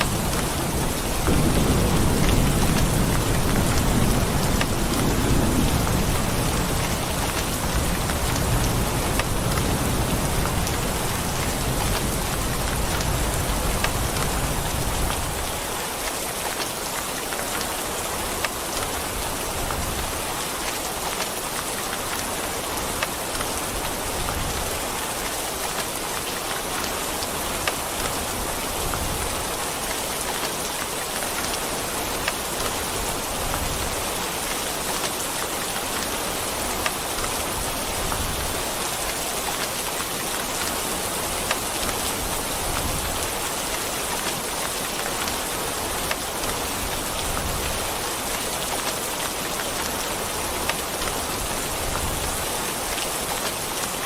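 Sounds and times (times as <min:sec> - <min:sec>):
distant thunder rumble: 0:00.0 - 0:15.4
steady rain falling: 0:00.0 - 0:54.0.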